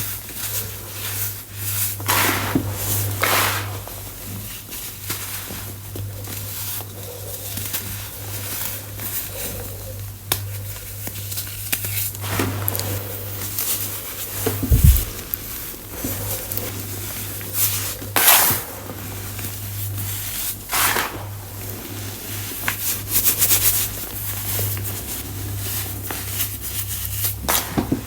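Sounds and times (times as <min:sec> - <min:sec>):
baking soda chunks crunching: 0:10.2 - 0:27.9
steady low hum: 0:12.1 - 0:18.2
low thump: 0:14.6 - 0:15.3.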